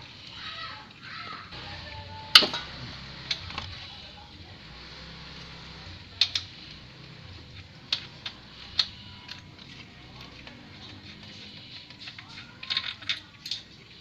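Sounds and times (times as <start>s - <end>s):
low steady background: 0.0s - 14.0s.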